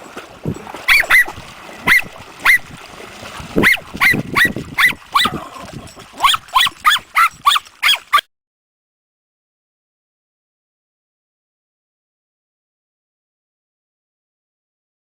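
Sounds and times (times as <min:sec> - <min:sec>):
small dog yapping: 0:00.9 - 0:02.7, 0:03.6 - 0:05.6, 0:06.2 - 0:08.2.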